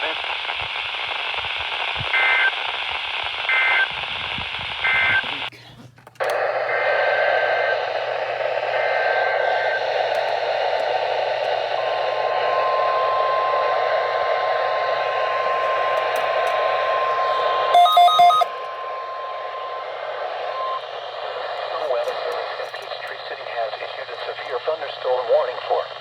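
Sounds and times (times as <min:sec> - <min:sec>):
radio static hiss: 0:00.0 - 0:26.0
steady warning alarm tone: 0:07.1 - 0:21.9
warbling data tones: 0:08.5 - 0:23.5
loud beeps: 0:17.0 - 0:21.3.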